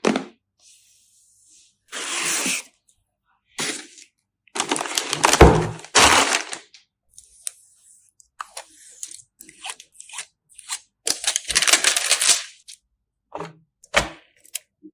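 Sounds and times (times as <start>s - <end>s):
packaging crinkling and crunching: 4.6s - 6.8s, 9.6s - 12.8s.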